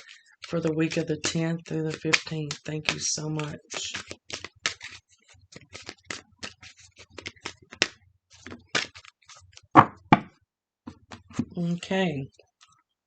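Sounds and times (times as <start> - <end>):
cards being shuffled: 0.0 - 10.2.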